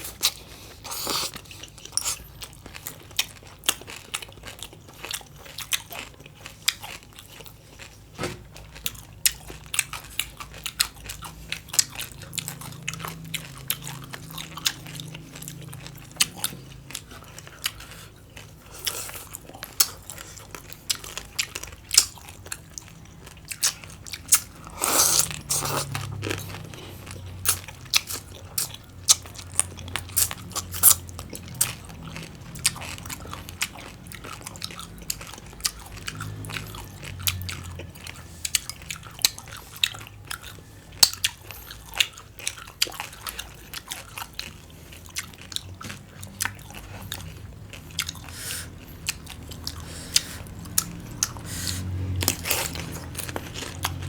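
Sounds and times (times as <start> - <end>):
person chewing crunchy food: 0.0 - 54.0.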